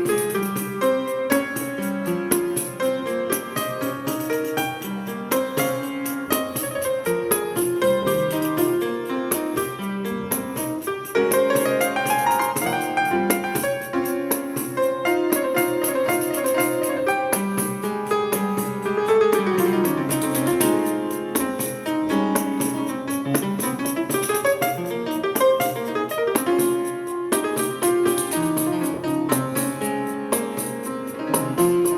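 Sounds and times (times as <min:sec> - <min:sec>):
jazz piano improvisation: 0:00.0 - 0:31.9.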